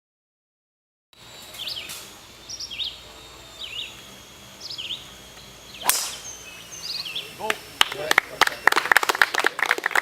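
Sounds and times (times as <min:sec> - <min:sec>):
bird chirping: 0:01.2 - 0:08.8.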